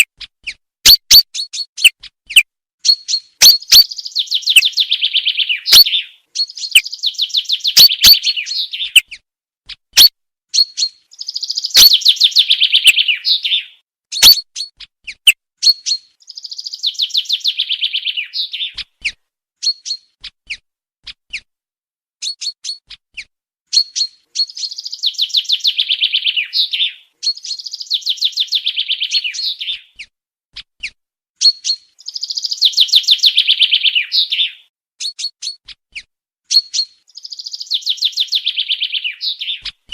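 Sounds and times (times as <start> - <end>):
sharp bird calls: 0.0 - 20.2, 23.7 - 30.1, 30.8 - 35.6, 36.5 - 39.9
chaffinch trilling song: 0.9 - 9.2, 10.6 - 18.9, 23.8 - 30.0, 31.5 - 34.6, 36.6 - 39.9.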